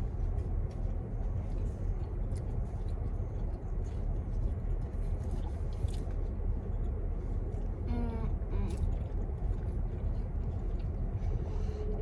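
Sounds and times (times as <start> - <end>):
small clicks and rustles: 0.2 - 7.8.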